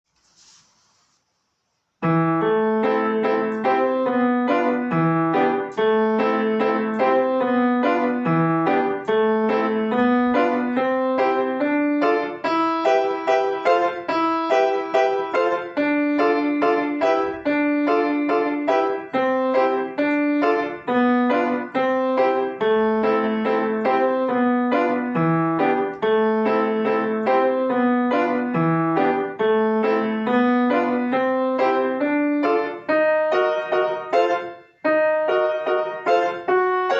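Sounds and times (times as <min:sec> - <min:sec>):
fast piano piece: 0:02.0 - 0:36.9.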